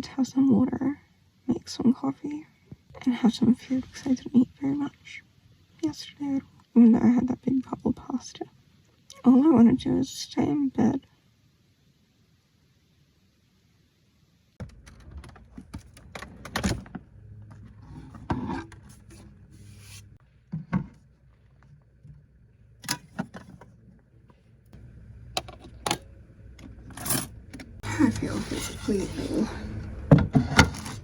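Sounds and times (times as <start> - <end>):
rustling and scraping: 14.8 - 22.3.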